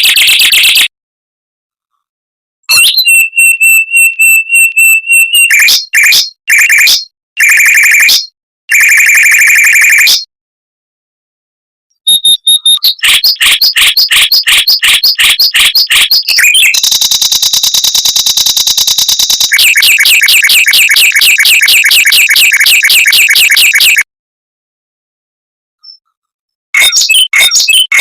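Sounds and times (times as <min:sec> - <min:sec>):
mockingbird singing: 0:02.7 - 0:05.9, 0:12.1 - 0:16.8, 0:26.8 - 0:28.0.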